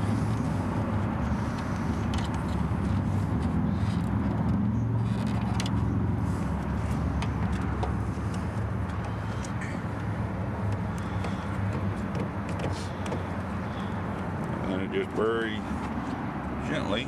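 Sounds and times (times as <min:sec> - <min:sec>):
low engine rumble: 0:00.0 - 0:17.0
hand tools clicking and tapping: 0:07.2 - 0:15.2.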